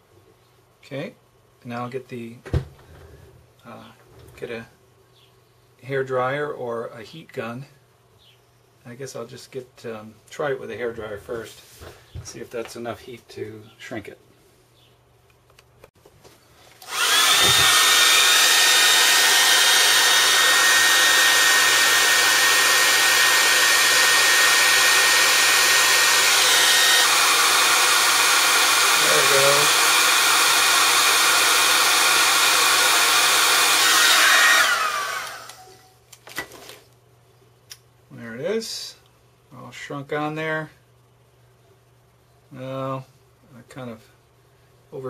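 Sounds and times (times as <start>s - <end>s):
hair dryer blowing with whine: 16.8s - 35.9s.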